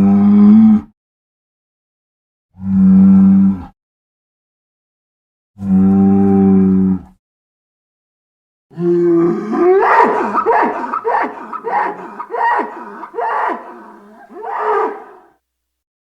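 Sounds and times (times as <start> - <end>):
animal-like pitched cries: 9.0 - 15.3.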